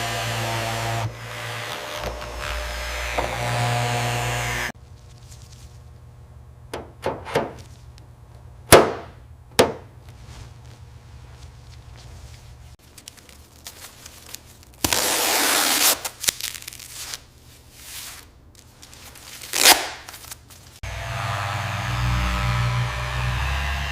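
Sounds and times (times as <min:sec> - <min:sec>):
power tool humming: 0:00.0 - 0:04.8, 0:20.8 - 0:23.9.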